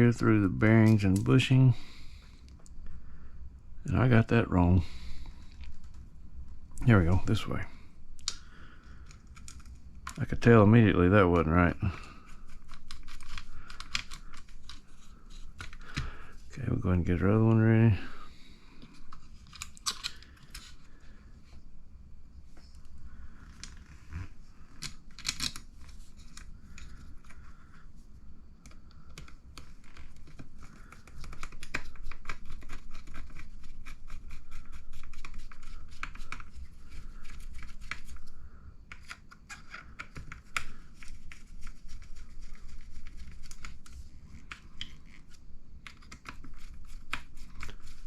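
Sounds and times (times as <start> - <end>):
screwdriver clicking and scratching: 12.3 - 15.8.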